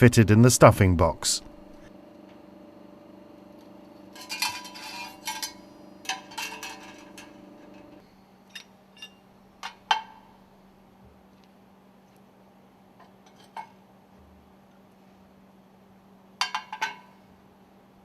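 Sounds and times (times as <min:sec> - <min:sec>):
metal rings clinking: 0:04.2 - 0:09.2.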